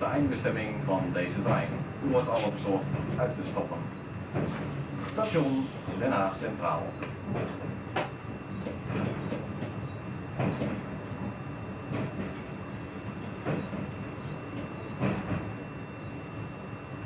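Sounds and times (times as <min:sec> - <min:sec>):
train rumble: 0:00.0 - 0:17.0
train wheels clacking on rail joints: 0:04.3 - 0:06.2, 0:07.0 - 0:15.5.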